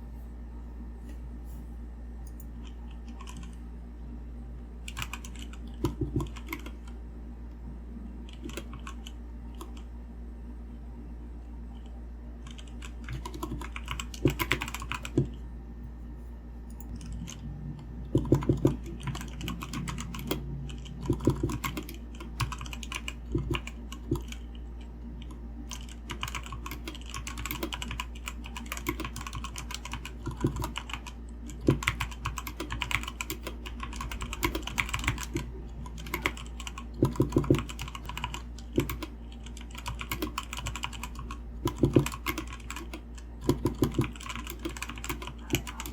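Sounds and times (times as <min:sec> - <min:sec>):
fast typing on mechanical keyboard: 0:02.6 - 0:03.6, 0:04.9 - 0:07.0, 0:08.2 - 0:09.9, 0:12.4 - 0:15.4, 0:16.9 - 0:24.6, 0:25.2 - 0:45.9.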